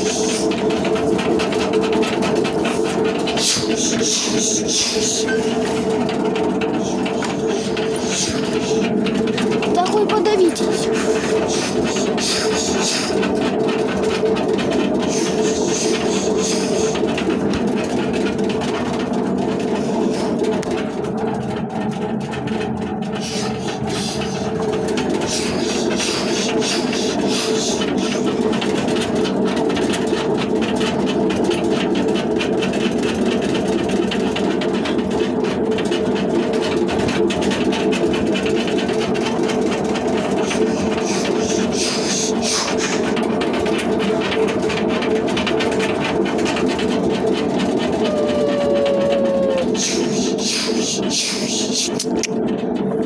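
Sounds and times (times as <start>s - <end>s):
washing machine motor and drum: 0.0s - 53.0s
falling whine: 48.0s - 51.1s.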